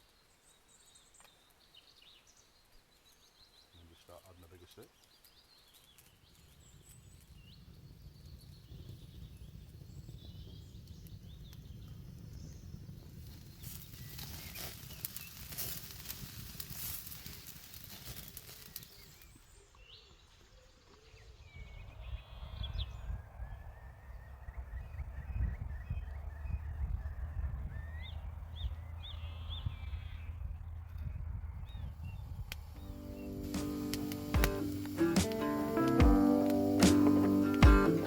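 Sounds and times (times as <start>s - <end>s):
crackles and snaps: 4.2s - 19.8s, 32.3s - 38.0s
low rumble: 21.6s - 34.8s.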